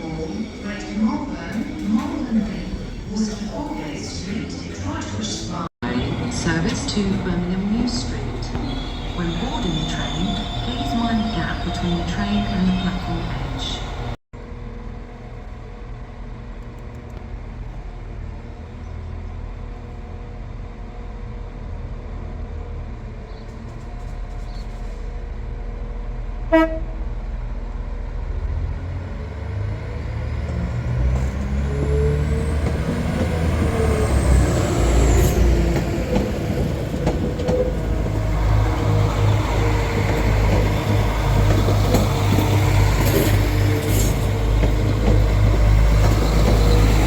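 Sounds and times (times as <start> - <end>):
diesel train engine rumble: 0.0 - 47.0
train horn toot: 26.5 - 27.1.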